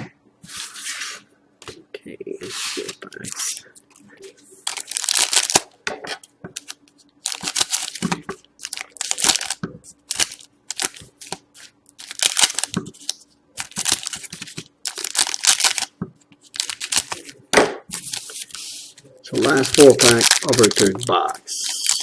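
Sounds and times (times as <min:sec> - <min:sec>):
card pack wrappers crinkling: 0:04.6 - 0:05.7, 0:06.6 - 0:18.7, 0:19.3 - 0:22.0.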